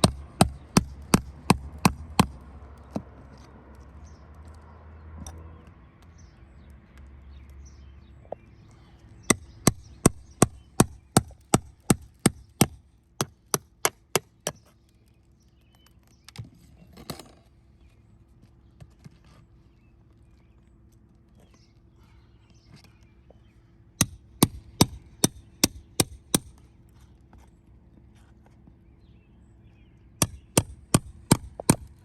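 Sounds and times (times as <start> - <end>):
hammer strikes on roof: 0.0 - 2.4, 9.3 - 14.6, 24.0 - 26.6, 30.2 - 32.0
faint knocks and scrapes: 18.4 - 20.2.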